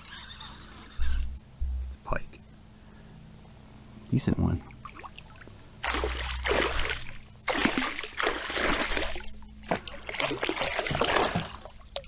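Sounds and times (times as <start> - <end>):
fish thrashing water splashing: 5.8 - 12.0.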